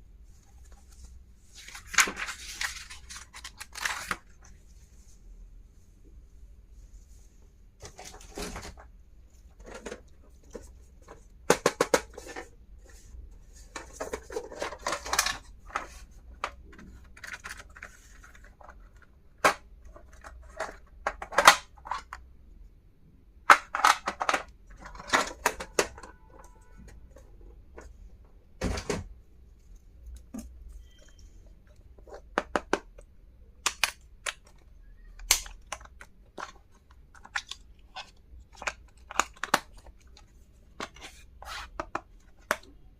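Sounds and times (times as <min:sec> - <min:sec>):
plastic items clicking and tapping: 0:09.5 - 0:12.5, 0:13.6 - 0:22.2, 0:23.4 - 0:27.9, 0:31.7 - 0:41.1, 0:41.7 - 0:42.8.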